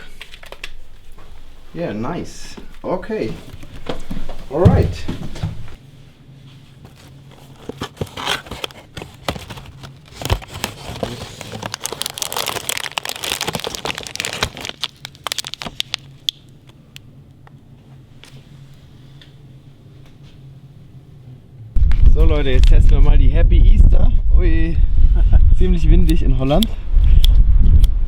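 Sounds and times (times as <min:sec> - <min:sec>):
packaging crinkling and rustling: 0:06.8 - 0:16.5.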